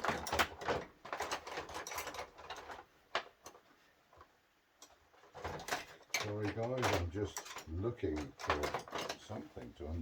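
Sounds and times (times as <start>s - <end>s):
metal tools clattering: 0.0s - 2.9s, 5.2s - 9.7s.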